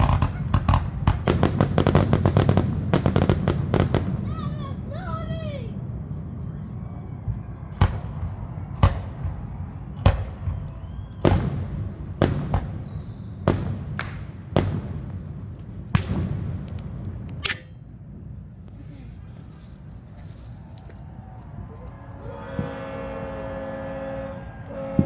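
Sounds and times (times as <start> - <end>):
fireworks bangs: 0.0 - 18.6
low rumble: 0.0 - 23.4.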